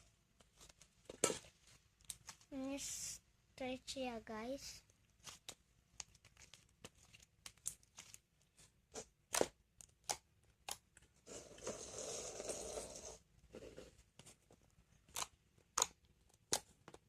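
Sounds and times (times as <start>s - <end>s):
crackly rustle of slime: 0.0s - 3.2s, 4.0s - 13.2s.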